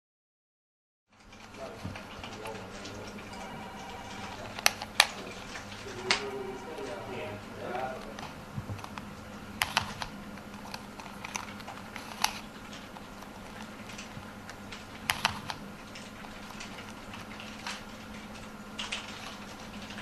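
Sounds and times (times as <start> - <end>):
faint steady hum: 1.1 - 20.0
computer keyboard keys clicking: 8.0 - 20.0.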